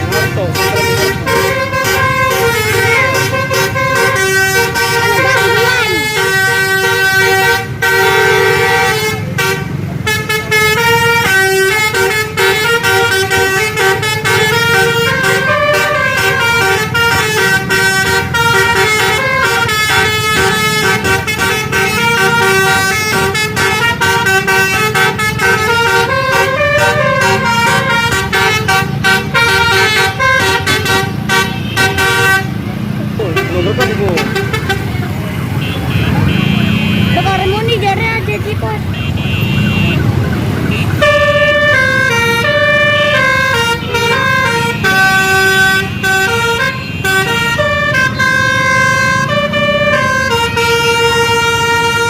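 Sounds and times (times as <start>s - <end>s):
multi-tone air horn melody: 0.0s - 37.6s, 40.7s - 52.0s.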